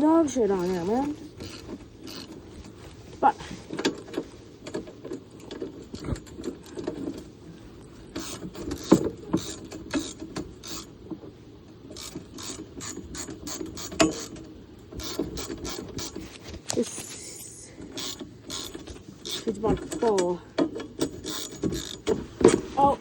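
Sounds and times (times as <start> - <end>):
ratchet wrench clicking: 1.4 - 2.3, 8.2 - 10.9, 11.9 - 14.4, 18.0 - 19.5, 21.1 - 22.0.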